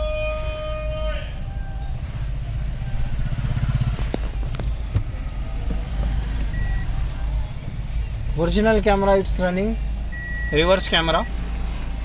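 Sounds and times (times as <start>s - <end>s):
engine and road rumble: 0.0s - 12.0s
short beep: 6.5s - 7.0s, 10.1s - 11.4s.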